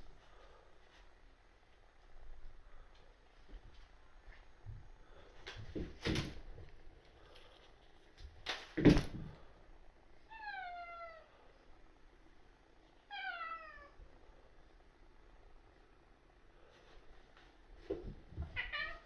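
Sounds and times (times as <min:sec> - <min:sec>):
cat meowing: 0:10.3 - 0:11.3, 0:13.1 - 0:14.0, 0:18.6 - 0:19.0.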